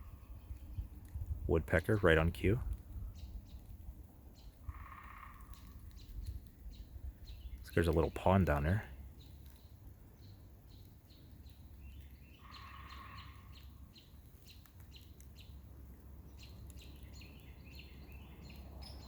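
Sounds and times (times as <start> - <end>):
birds chirping: 1.5 - 3.7, 4.3 - 15.6, 16.2 - 19.0
lower bird call: 11.9 - 15.5.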